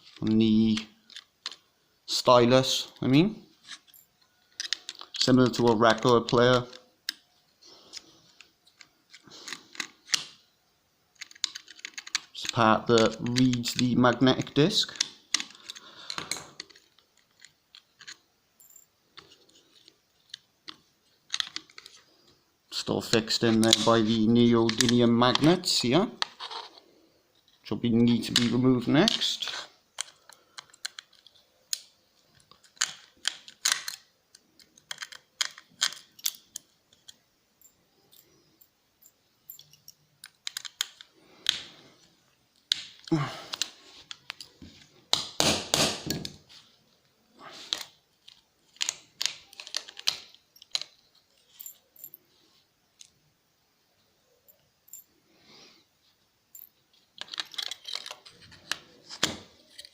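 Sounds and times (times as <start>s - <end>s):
small metal parts clicking: 0.0s - 1.6s, 3.0s - 7.2s, 11.1s - 22.1s, 26.2s - 41.6s, 47.7s - 52.2s, 54.5s - 55.1s, 56.5s - 58.8s.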